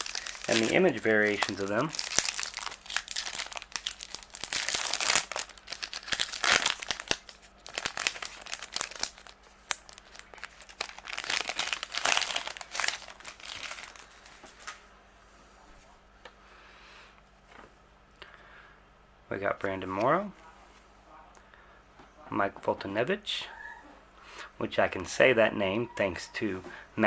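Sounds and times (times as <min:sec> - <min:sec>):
wrapper tearing and crinkling: 0:00.0 - 0:14.8.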